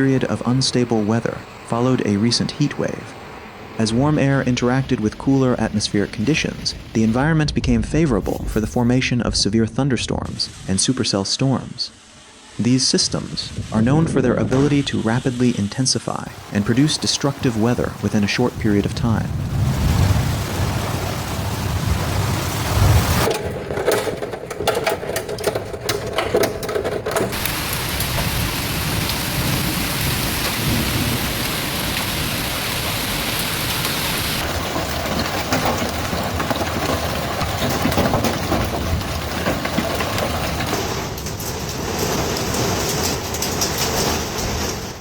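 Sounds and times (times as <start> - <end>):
heavy rain: 0.0 - 9.2, 16.3 - 23.4, 27.1 - 45.0
thunder: 17.4 - 24.1, 27.3 - 44.9.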